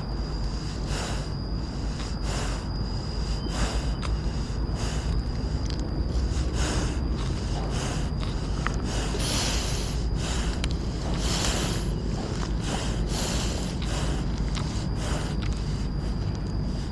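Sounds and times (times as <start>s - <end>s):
wind rumble on microphone: 0.0s - 16.9s
hissy bursts: 2.0s - 15.3s.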